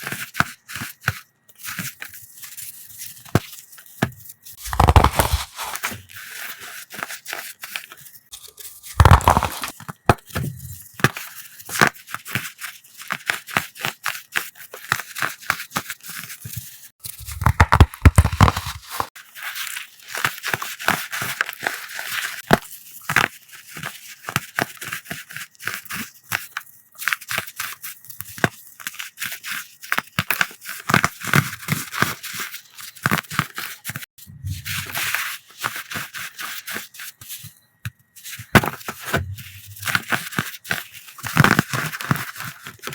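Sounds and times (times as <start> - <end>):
chalk crunching by hand: 4.6 - 6.0, 8.4 - 9.7, 17.0 - 19.1.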